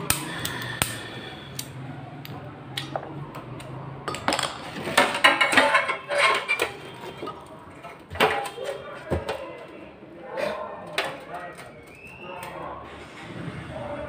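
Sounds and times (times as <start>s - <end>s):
metal parts clinking and clattering: 4.0s - 8.8s.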